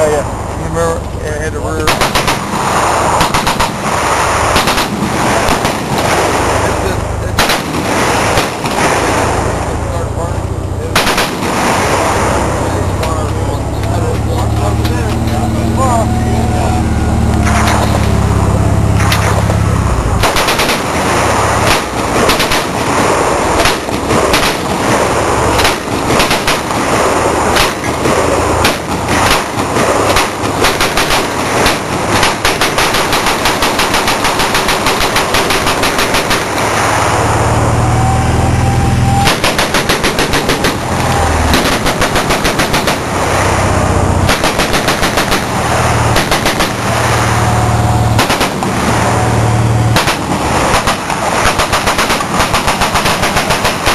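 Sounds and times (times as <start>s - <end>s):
low rumble: 0.0s - 53.9s
machine guns firing: 1.6s - 10.2s, 10.9s - 19.6s, 20.2s - 37.1s, 39.2s - 53.9s.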